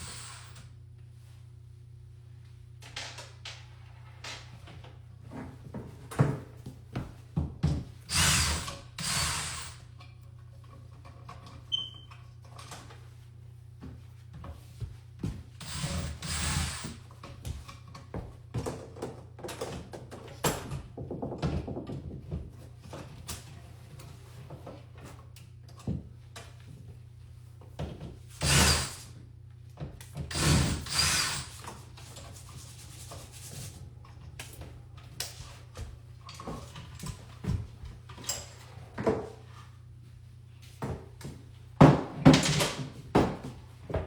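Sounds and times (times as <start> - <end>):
tool scraping on wall: 15.6 - 17.0, 30.3 - 33.8.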